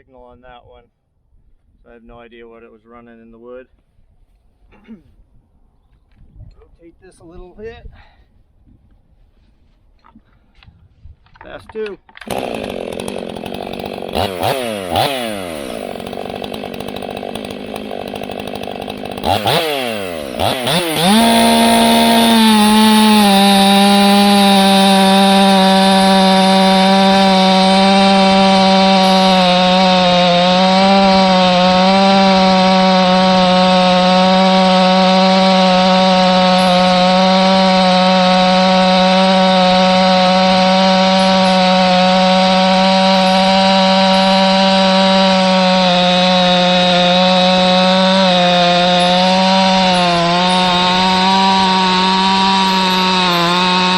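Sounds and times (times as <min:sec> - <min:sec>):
chainsaw revving: 0:12.2 - 0:53.9.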